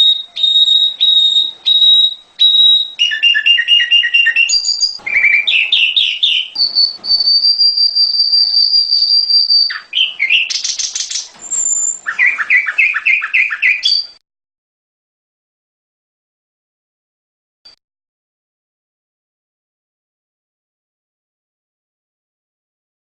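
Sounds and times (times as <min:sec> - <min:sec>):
bird song rapid chirps: 0:00.0 - 0:14.2
long steady bird whistle: 0:00.0 - 0:14.2.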